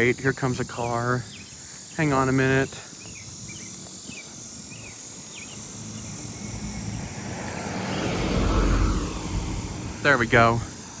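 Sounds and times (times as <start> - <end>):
car passing by: 5.6 - 11.0.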